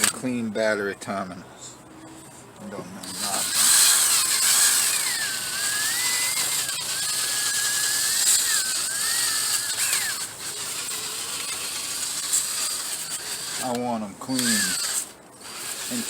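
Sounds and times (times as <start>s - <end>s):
small power tool whining: 0.0s - 0.2s, 2.0s - 16.0s.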